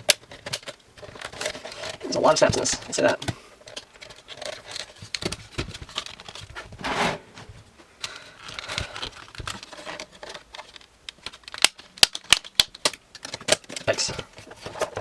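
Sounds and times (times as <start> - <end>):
plastic scraping and rustling: 0.0 - 15.0
sharp plastic clicks: 10.6 - 14.0.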